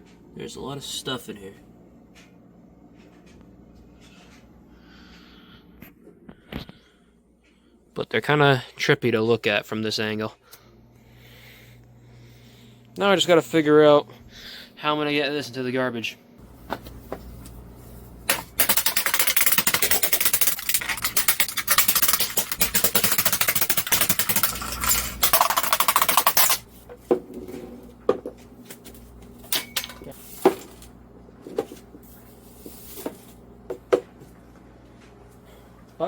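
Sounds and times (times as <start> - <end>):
loose parts clattering and rustling: 18.3 - 26.7.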